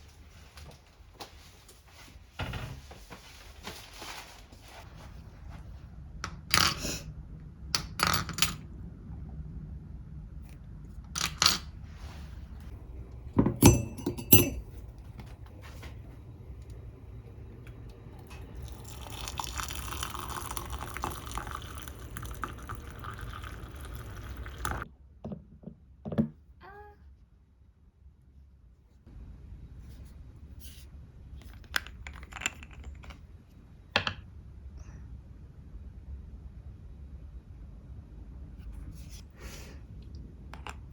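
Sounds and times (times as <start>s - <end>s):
dishes clinking: 13.3s - 15.2s
liquid pouring: 16.2s - 24.8s.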